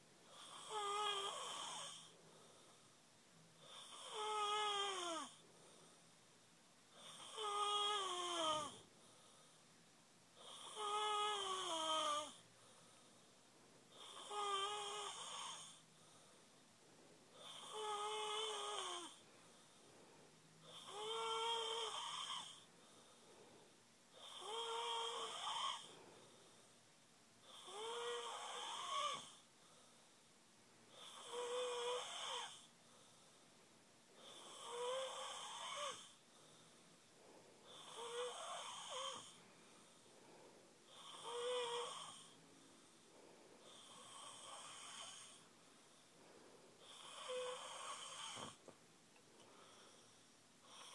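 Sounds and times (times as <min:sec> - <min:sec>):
person snoring: 0:00.3 - 0:02.2, 0:03.6 - 0:05.4, 0:07.0 - 0:08.8, 0:10.4 - 0:12.4, 0:13.9 - 0:15.8, 0:17.4 - 0:19.2, 0:20.6 - 0:22.7, 0:24.1 - 0:26.0, 0:27.4 - 0:29.4, 0:30.9 - 0:32.7, 0:34.2 - 0:36.2, 0:37.6 - 0:39.4, 0:40.8 - 0:42.4, 0:43.6 - 0:45.5, 0:46.8 - 0:48.6.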